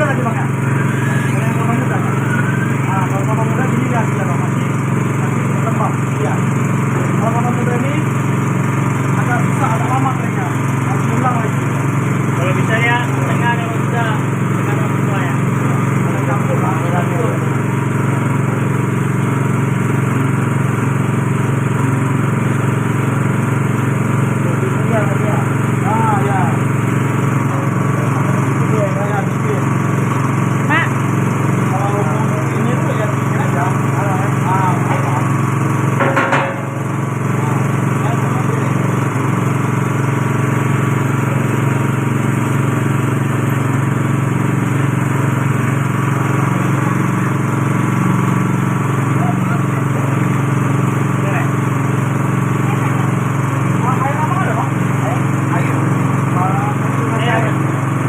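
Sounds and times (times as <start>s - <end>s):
machine mechanical drone: 0.0s - 58.0s.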